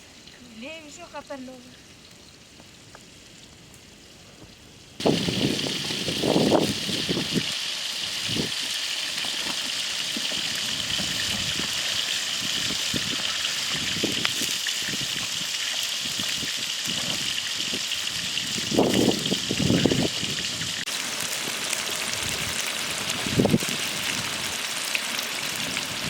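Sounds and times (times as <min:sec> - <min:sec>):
steady rain hiss: 0:00.0 - 0:26.0.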